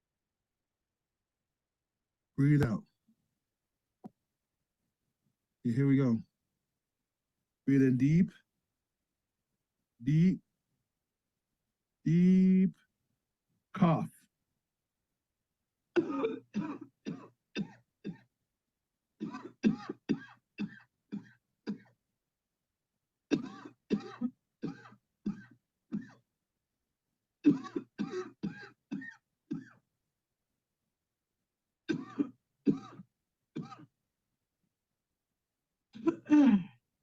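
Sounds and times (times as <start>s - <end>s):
person coughing: 16.0s - 18.3s, 19.2s - 21.9s, 23.3s - 26.2s, 27.4s - 29.8s, 31.9s - 33.9s, 36.0s - 36.8s.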